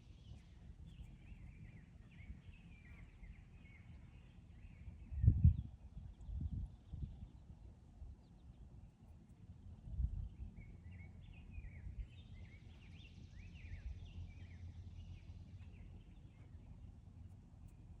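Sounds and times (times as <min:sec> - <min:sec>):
birds chirping: 0:00.0 - 0:05.3, 0:10.2 - 0:18.0
low background rumble: 0:00.0 - 0:18.0.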